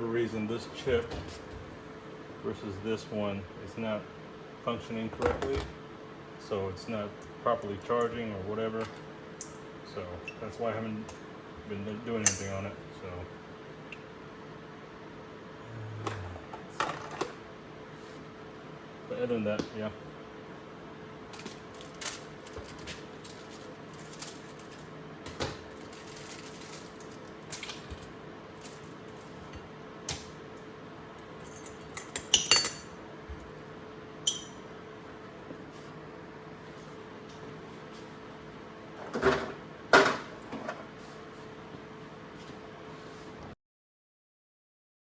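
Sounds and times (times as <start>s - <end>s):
faint steady hum: 0.0s - 43.0s
small metal items clinking: 25.8s - 27.8s.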